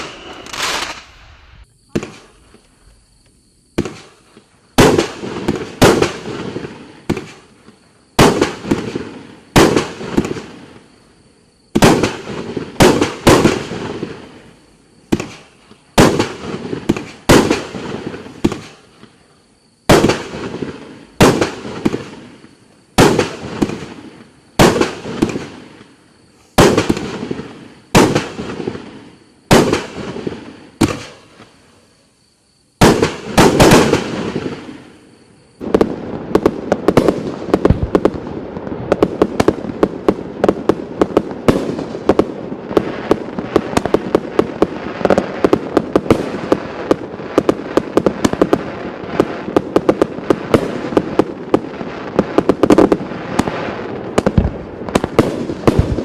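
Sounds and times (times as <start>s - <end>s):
rapid small firework reports: 0.0s - 3.0s, 32.8s - 56.0s
fireworks bangs: 0.0s - 10.9s, 11.7s - 19.2s, 19.8s - 31.7s, 32.8s - 56.0s.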